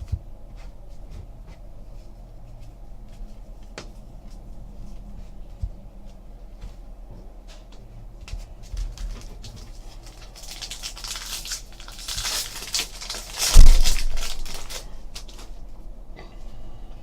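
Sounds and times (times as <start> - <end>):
foil wrappers crinkling and tearing: 8.7 - 15.6
sharp thump: 13.5 - 14.3.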